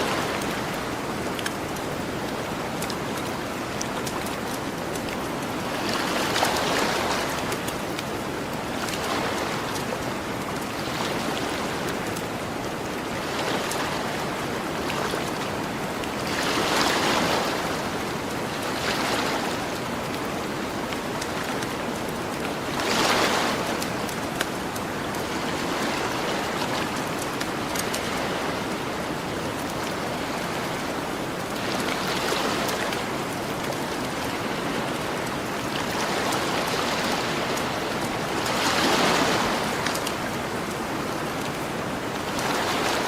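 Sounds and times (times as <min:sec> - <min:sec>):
ocean waves washing on shore: 0:00.0 - 0:43.0.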